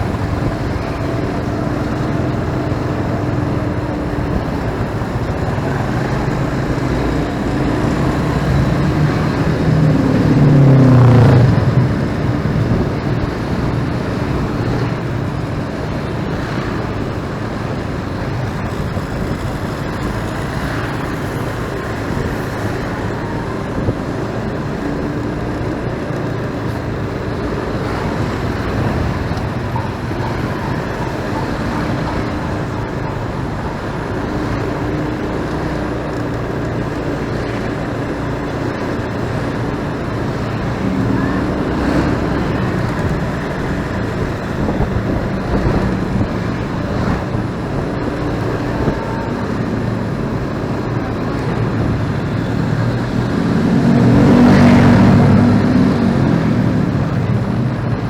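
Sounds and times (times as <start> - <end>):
motorcycle engine and tyre noise: 0.0 - 58.0
surrounding traffic engines: 0.0 - 58.0.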